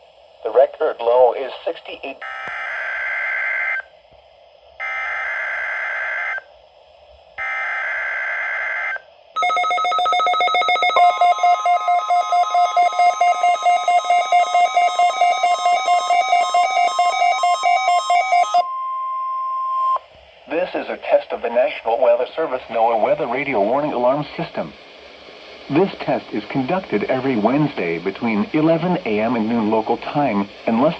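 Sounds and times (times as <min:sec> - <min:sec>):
raspy data bursts: 0:09.4 - 0:18.6
alert receiver beeping rapidly: 0:09.4 - 0:18.7
steady warning alarm tone: 0:09.4 - 0:20.0.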